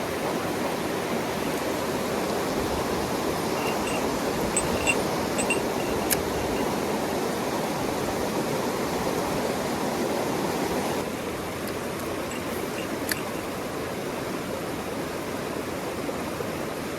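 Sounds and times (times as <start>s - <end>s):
stream running water: 0.0s - 16.9s
short high peeps: 3.6s - 6.7s.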